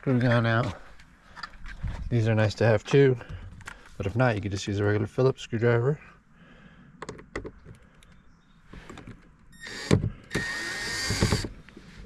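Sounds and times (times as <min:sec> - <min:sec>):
electric screw gun whirring: 0:09.6 - 0:11.5.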